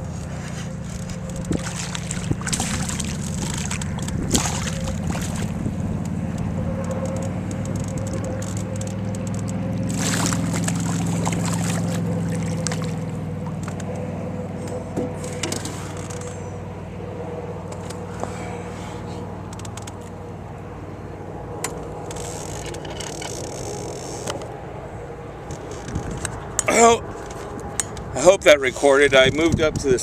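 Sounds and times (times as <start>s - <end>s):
boat engine humming: 0.0s - 29.4s
water splashing against canoe: 0.3s - 6.2s, 8.0s - 13.9s.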